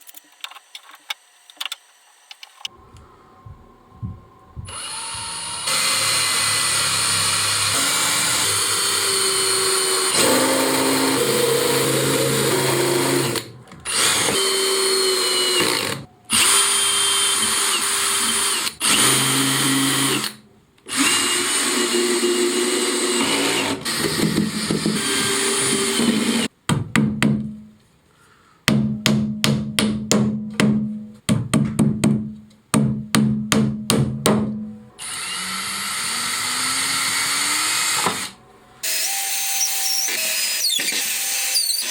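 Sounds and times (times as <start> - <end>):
power drill drilling into plywood: 35.0 - 41.9.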